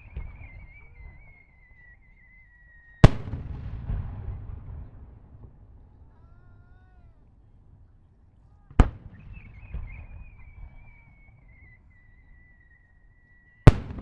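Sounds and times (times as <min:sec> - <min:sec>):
firework whistling: 0:00.0 - 0:05.0, 0:09.0 - 0:14.0
firework bang with crackling echo: 0:03.0 - 0:05.9, 0:08.7 - 0:11.0, 0:13.7 - 0:14.0.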